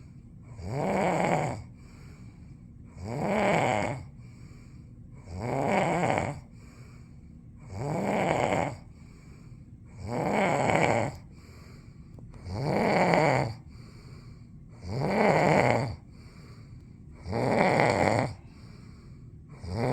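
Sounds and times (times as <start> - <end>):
loud snoring: 0.5 - 1.7, 2.9 - 4.1, 5.2 - 6.5, 7.6 - 8.9, 9.9 - 11.3, 12.4 - 13.8, 14.8 - 16.4, 17.2 - 18.7, 19.5 - 19.9.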